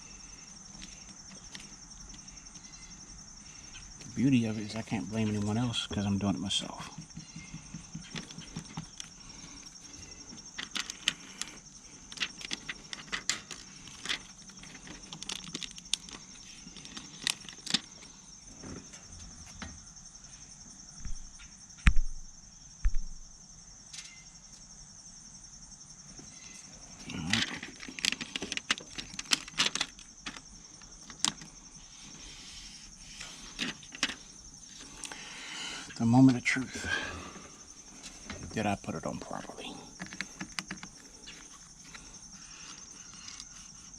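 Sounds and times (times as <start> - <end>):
heavy thumps: 6.8 - 9.0.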